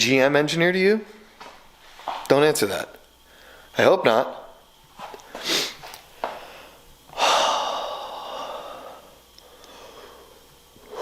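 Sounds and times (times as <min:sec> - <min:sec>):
loud hiss: 0:05.3 - 0:05.9.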